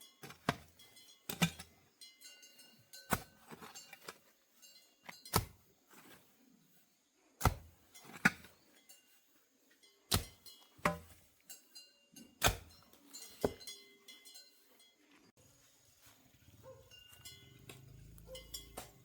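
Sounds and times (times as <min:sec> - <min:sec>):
metal tool clinking: 0:09.8 - 0:15.0, 0:16.6 - 0:19.0.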